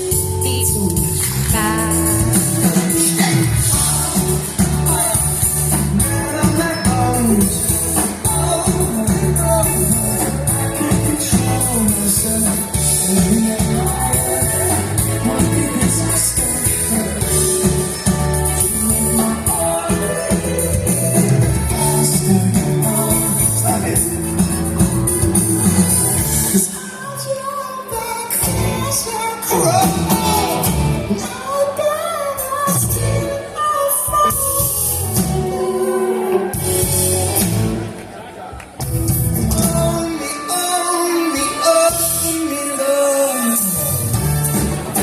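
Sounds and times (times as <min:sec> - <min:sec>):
live rock band playing: 0:00.0 - 0:26.8, 0:28.0 - 0:38.2, 0:38.8 - 0:45.0
lead vocal singing: 0:00.0 - 0:37.4, 0:39.3 - 0:45.0.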